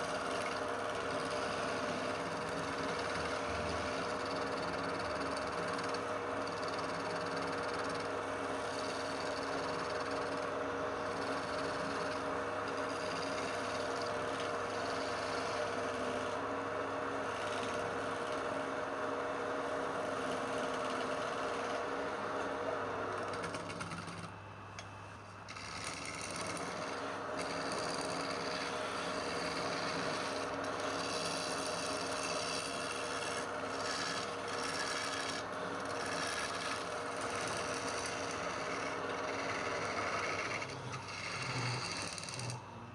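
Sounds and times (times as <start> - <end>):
tool scraping spinning wood: 0.0 - 24.4, 25.4 - 42.7
lathe motor hum: 0.0 - 42.9.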